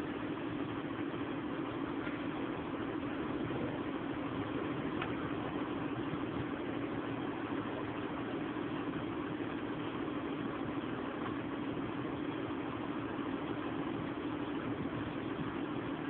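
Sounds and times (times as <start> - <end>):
engine idling: 0.0 - 16.0.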